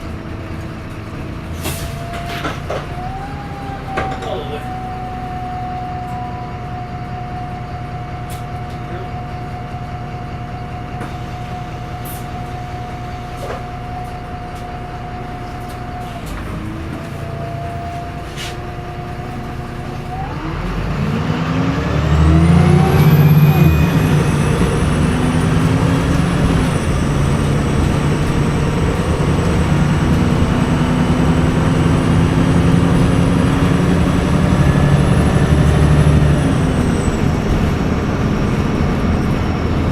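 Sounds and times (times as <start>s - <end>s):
bus diesel engine: 0.0s - 39.9s
turbo whine: 19.0s - 39.9s.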